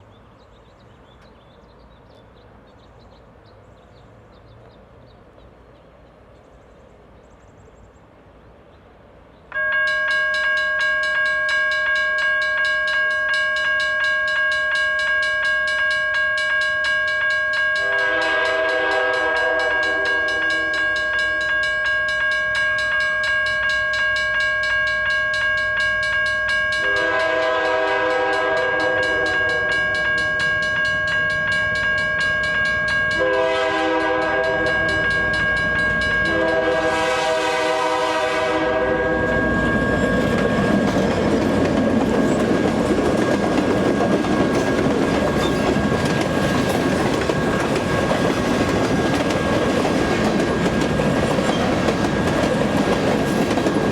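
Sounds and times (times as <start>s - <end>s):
locomotive horn blasts: 9.5s - 22.2s, 26.4s - 31.2s, 32.1s - 40.4s
railroad crossing bell ringing: 9.5s - 53.9s.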